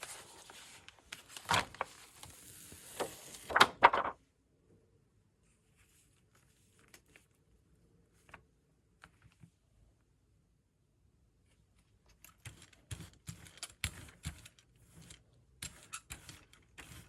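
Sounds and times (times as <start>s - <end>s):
paper rustling and crackling: 0.0s - 4.2s.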